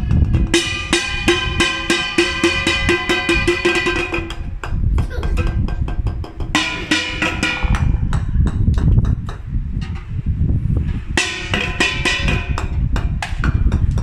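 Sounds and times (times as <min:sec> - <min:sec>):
golf balls clacking: 0:00.0 - 0:10.2.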